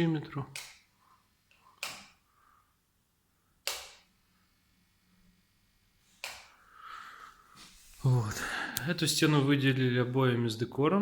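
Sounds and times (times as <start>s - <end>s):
sharp clicks: 0.5s - 0.8s, 1.8s - 2.2s, 3.6s - 4.1s.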